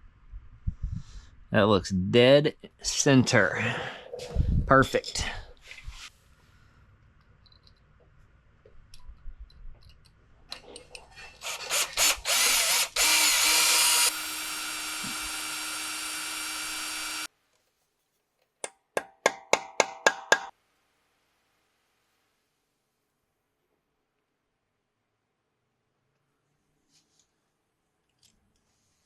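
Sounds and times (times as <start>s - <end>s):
electric drill whining: 11.4s - 17.3s.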